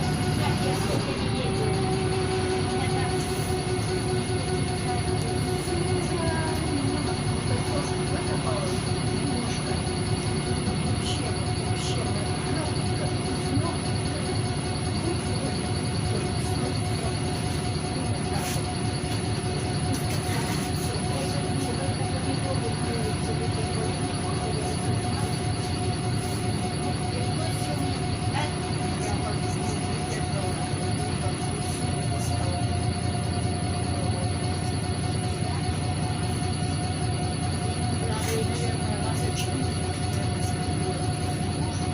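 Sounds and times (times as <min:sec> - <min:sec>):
bus engine and road rumble: 0:00.0 - 0:41.9
thin steady whine: 0:00.0 - 0:41.9.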